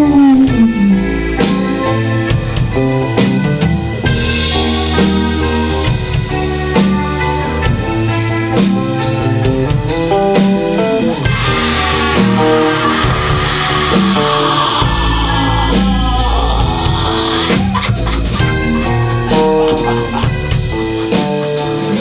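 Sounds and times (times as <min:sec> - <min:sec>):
bass guitar: 0:00.0 - 0:22.0
electric guitar: 0:00.0 - 0:22.0
drum kit steady beat: 0:00.7 - 0:22.0.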